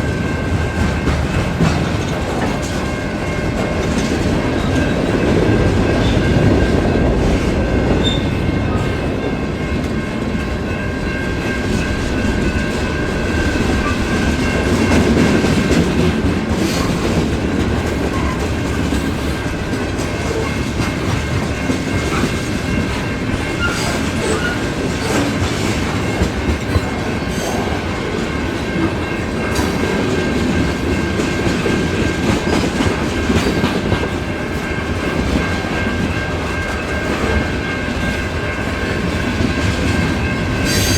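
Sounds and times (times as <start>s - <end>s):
freight train rumbling: 0.0s - 40.9s
high squeal of wheels: 40.6s - 40.9s.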